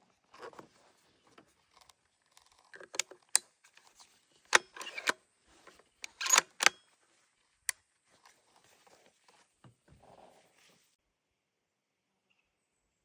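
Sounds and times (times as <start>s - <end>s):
rifle bolt sliding scrapes: 1.7s - 6.8s
rifle bolt metallic clicks: 4.5s - 5.2s, 6.0s - 6.8s.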